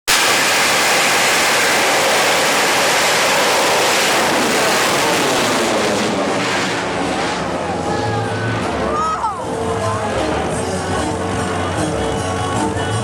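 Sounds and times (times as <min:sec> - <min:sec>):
rocket motor hissing: 0:00.0 - 0:07.5.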